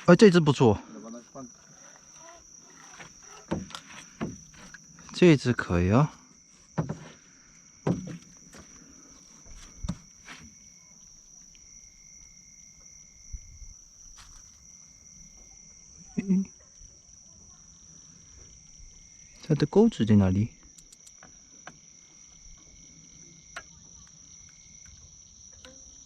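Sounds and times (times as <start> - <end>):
faint intermittent insect tone: 0.0 - 26.0
insects trilling: 0.0 - 26.0
knocks and handling sounds: 1.6 - 5.2, 6.6 - 8.9.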